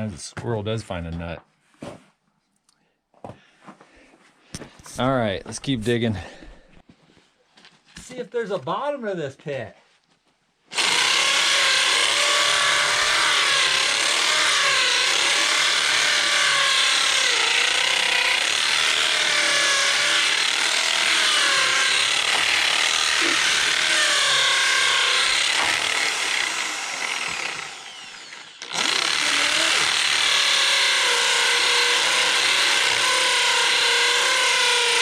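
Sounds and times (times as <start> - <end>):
power drill boring into dirt: 10.7 - 35.0.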